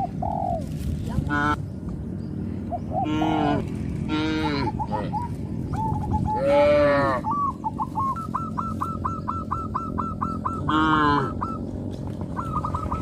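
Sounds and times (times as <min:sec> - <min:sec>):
bird chirping: 0:01.6 - 0:13.0
cattle mooing: 0:03.0 - 0:04.8, 0:06.4 - 0:07.2.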